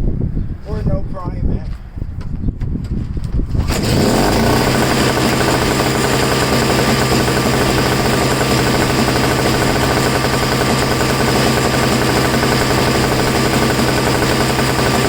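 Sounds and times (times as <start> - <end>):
snow blower engine running: 3.6 - 15.0.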